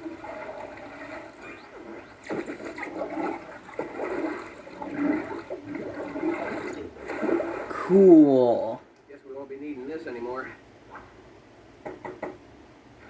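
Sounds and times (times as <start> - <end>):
rushing swirling water: 0.0 - 8.2.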